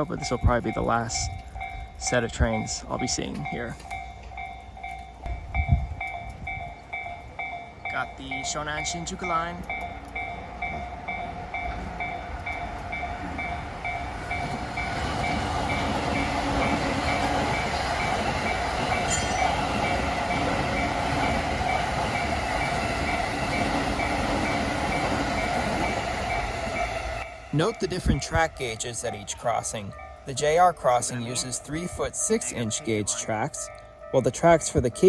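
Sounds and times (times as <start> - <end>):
level crossing bell ringing: 0.0 - 35.0
train wheels rumbling: 0.0 - 35.0.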